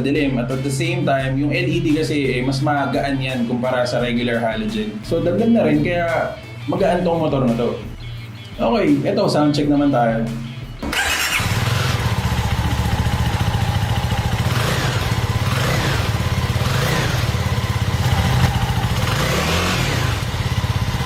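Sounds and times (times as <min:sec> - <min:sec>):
engine revving: 0:10.8 - 0:21.0
motorcycle engine idling: 0:10.9 - 0:21.0.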